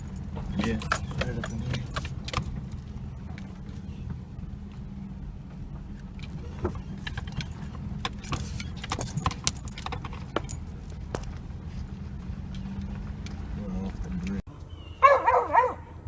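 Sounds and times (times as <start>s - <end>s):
clicking and jingling rattles: 0.0s - 3.5s, 6.2s - 11.4s
vehicle engine low rumble: 0.0s - 16.0s.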